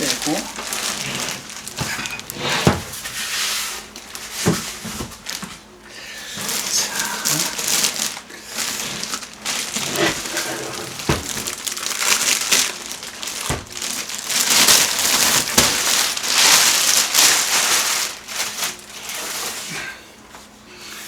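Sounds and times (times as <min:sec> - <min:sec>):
packing crinkling and rustling: 0:00.0 - 0:20.0
dull knocks: 0:11.0 - 0:11.6.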